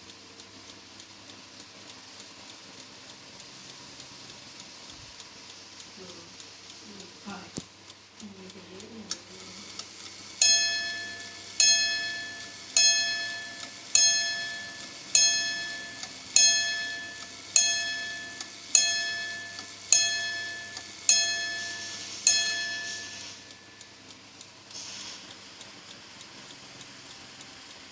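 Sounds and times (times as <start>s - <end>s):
alarm clock bell striking: 10.4s - 23.9s.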